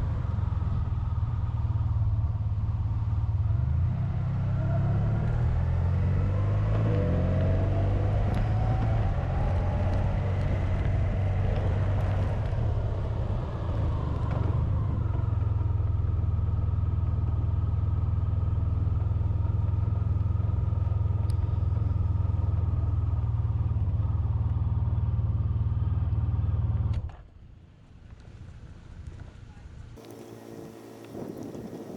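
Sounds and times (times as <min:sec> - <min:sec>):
motorcycle engine: 0:30.0 - 0:31.9.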